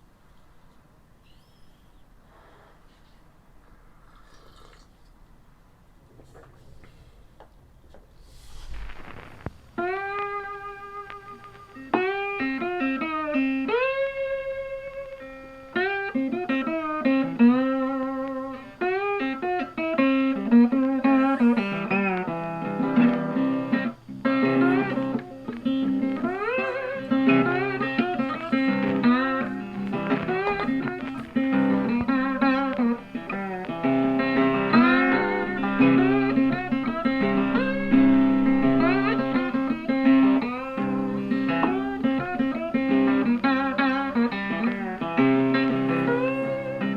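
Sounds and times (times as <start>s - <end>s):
bluesy guitar tune: 8.8s - 46.9s
steady bass line: 28.4s - 42.4s.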